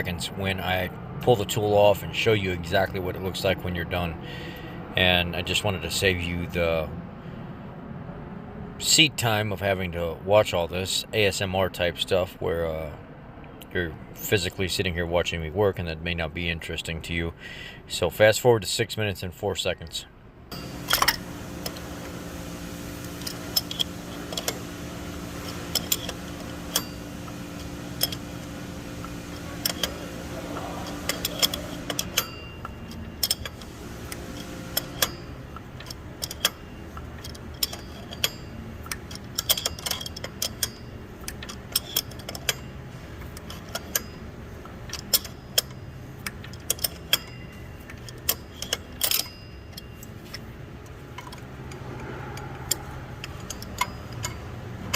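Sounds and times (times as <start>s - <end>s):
steady low hum: 20.4s - 54.9s
metallic clicks of wrenches: 20.5s - 22.1s, 22.9s - 54.9s.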